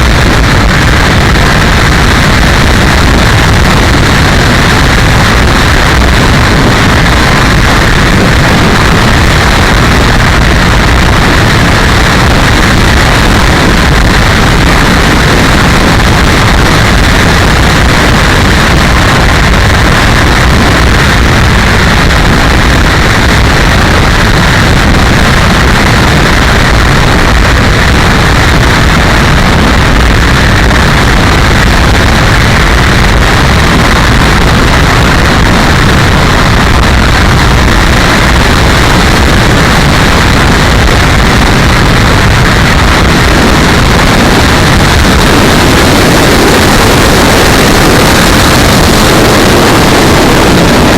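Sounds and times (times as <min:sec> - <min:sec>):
wind buffeting microphone: 0:00.0 - 0:50.9.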